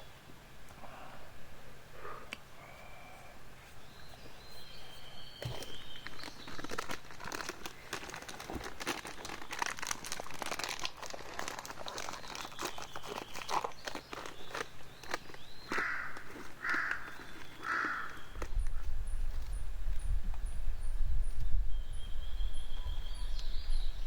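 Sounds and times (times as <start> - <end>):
plastic packaging crinkling: 5.4 - 19.4.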